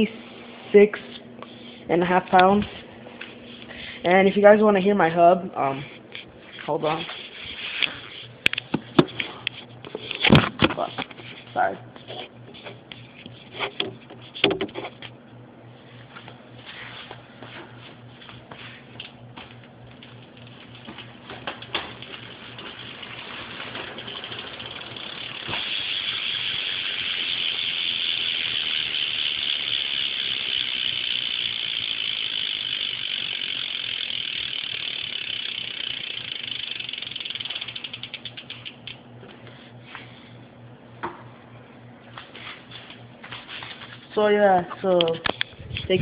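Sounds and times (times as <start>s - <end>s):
bicycle freewheel ratcheting clicks: 19.9s - 39.0s.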